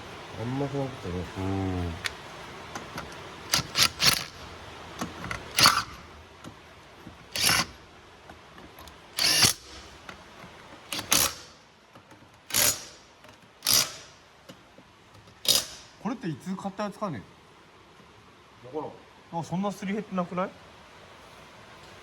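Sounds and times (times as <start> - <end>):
impact wrench bursts: 3.4 - 4.5, 5.2 - 6.0, 7.3 - 7.8, 9.2 - 10.0, 10.9 - 11.6, 12.5 - 14.2, 15.4 - 16.0.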